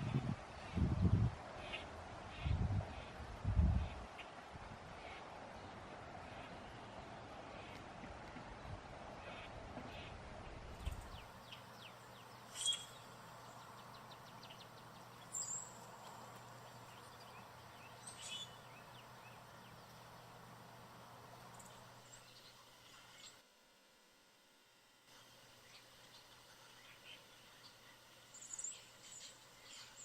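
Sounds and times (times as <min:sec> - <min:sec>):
faint steady hum: 0:00.0 - 0:30.0
birds chirping: 0:05.0 - 0:23.4.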